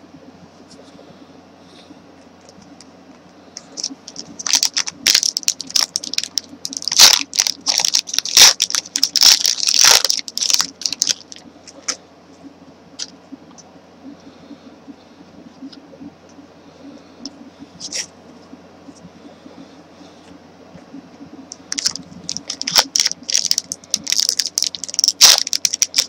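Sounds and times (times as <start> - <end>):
foil and plastic wrappers crinkling: 3.6 - 12.0, 21.6 - 26.0.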